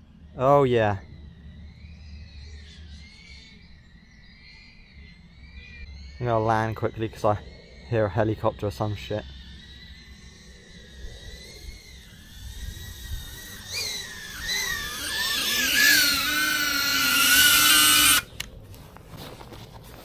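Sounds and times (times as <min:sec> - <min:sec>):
quadcopter motors whining: 0:05.9 - 0:18.5.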